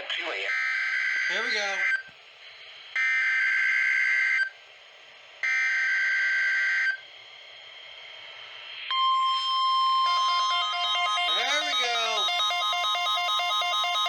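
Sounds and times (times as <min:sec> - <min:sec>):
warbling data tones: 0:08.9 - 0:14.0.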